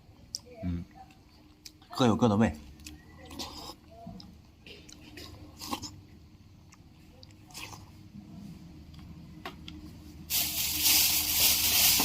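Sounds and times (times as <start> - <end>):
person chewing and slurping: 4.8 - 6.0
loud steady hiss: 10.3 - 12.0.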